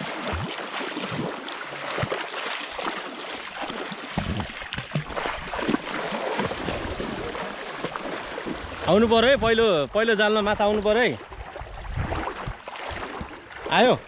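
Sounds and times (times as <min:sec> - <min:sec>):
net splashing in water: 0:00.0 - 0:08.9, 0:11.4 - 0:13.8
river water rushing: 0:00.0 - 0:09.0.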